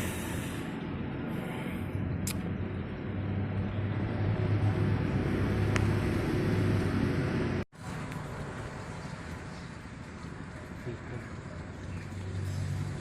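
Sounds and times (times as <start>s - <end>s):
highway traffic hum: 0.0s - 13.0s.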